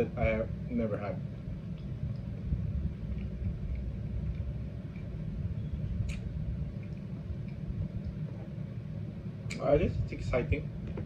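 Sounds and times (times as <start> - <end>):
low background rumble: 0.0 - 11.0.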